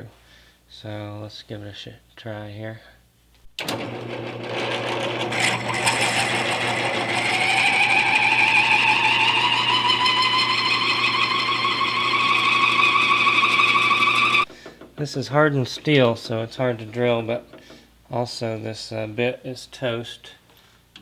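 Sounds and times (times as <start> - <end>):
motor hum: 3.6 - 14.5
drill bit squealing against steel: 5.3 - 14.5.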